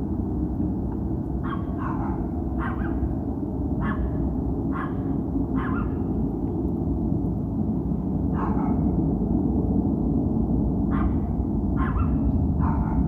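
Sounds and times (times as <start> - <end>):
deep rumble from the sky: 0.0 - 13.0
dog barking: 1.4 - 3.0, 3.8 - 5.0, 5.6 - 6.0, 8.3 - 8.9, 10.9 - 13.0.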